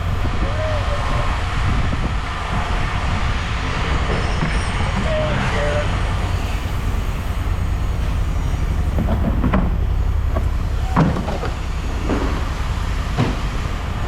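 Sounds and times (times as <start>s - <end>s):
engine rumbling: 0.0s - 14.0s
scrap metal clanking: 6.2s - 14.0s.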